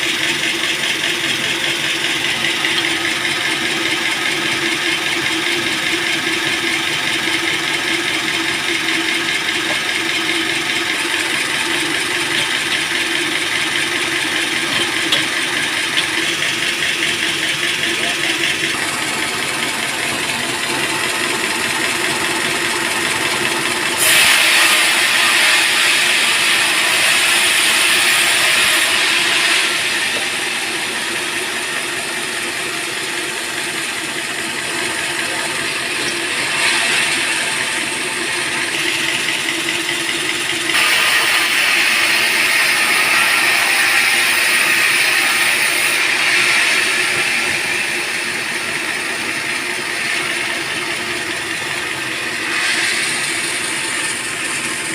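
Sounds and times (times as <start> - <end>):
saw blade cutting log: 0.0 - 54.9
sawmill running: 0.0 - 54.9.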